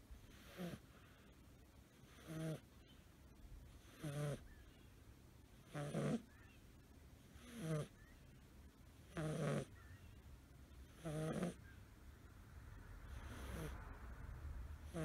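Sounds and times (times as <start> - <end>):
kitten snoring: 0.2 - 1.1, 2.0 - 2.7, 3.8 - 4.5, 5.7 - 6.3, 7.3 - 8.0, 9.1 - 9.7, 10.9 - 11.6, 13.0 - 13.8.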